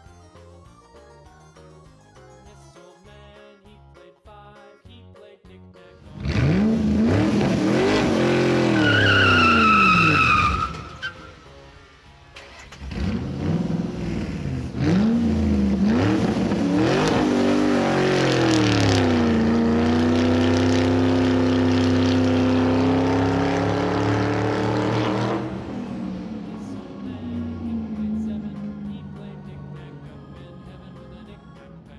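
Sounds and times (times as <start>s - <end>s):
vehicle engine revving: 6.0s - 11.4s, 12.4s - 31.4s.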